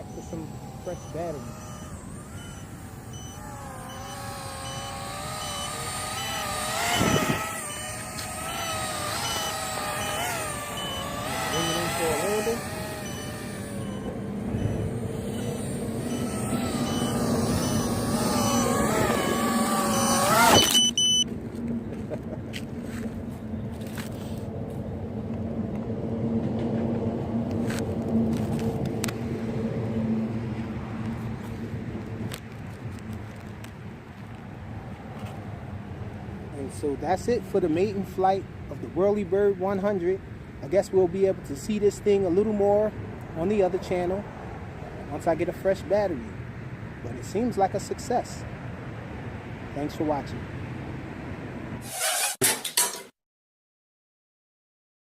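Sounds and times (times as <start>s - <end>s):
low-battery alarm beeping: 0.0s - 21.3s
quadcopter motors whining: 0.0s - 21.3s
steady low hum: 0.0s - 22.5s.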